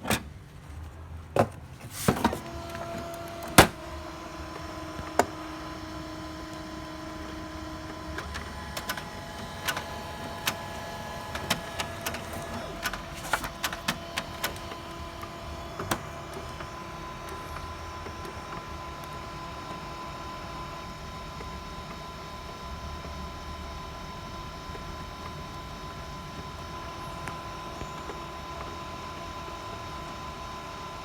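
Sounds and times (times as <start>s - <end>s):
printer clicks and knocks: 1.4s - 3.9s, 4.5s - 19.1s
printer mechanism humming: 1.8s - 31.0s.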